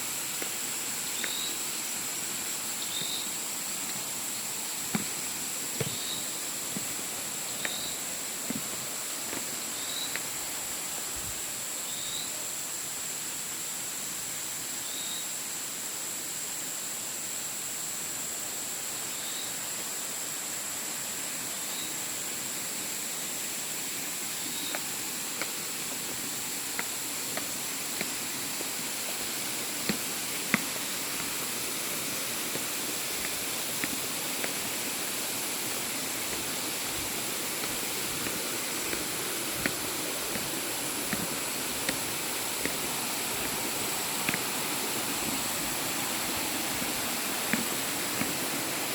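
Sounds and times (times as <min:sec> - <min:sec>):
falling water rushing: 0:00.0 - 0:11.8, 0:19.6 - 0:48.9
high insect drone: 0:00.0 - 0:48.9.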